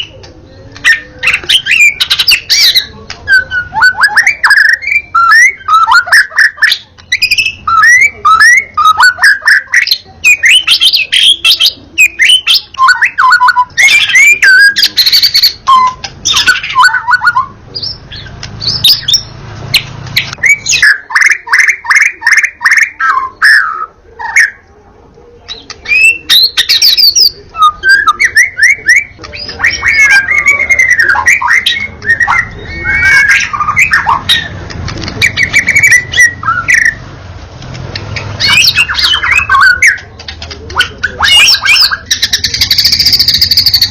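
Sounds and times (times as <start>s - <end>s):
songbird singing whistles: 0.0s - 24.6s, 25.4s - 34.6s, 35.2s - 37.0s, 38.1s - 40.1s, 40.7s - 43.9s.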